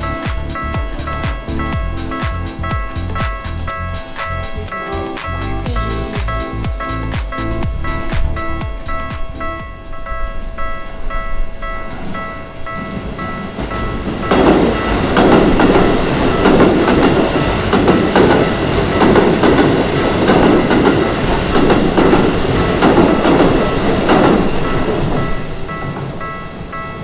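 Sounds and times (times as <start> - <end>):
level crossing warning bell dinging: 0.0 - 22.3, 22.9 - 27.0
train wheels clacking over rail joints: 13.6 - 26.3.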